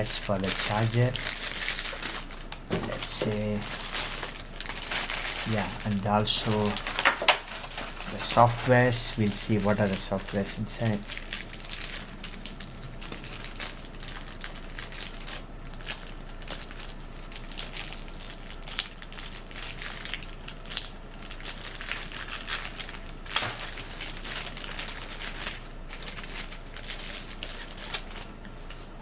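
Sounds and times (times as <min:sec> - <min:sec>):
plastic wrap and paper crinkling: 0:00.0 - 0:29.0.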